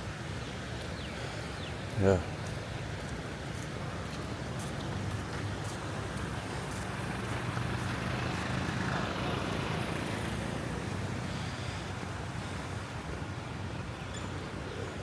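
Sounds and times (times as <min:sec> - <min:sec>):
vehicle engine hum passing: 0:03.4 - 0:15.0.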